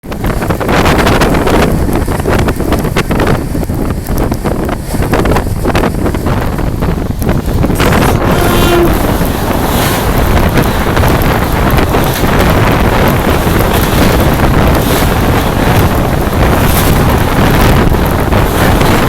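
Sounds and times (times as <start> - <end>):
heavy rain: 0.0 - 19.0
wind buffeting microphone: 0.0 - 19.0
train coaches rumbling: 4.6 - 19.0.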